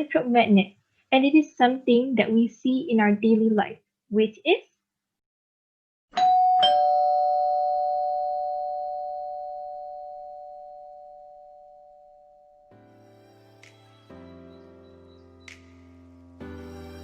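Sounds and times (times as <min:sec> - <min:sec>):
ding-dong doorbell chime: 0:06.2 - 0:12.6.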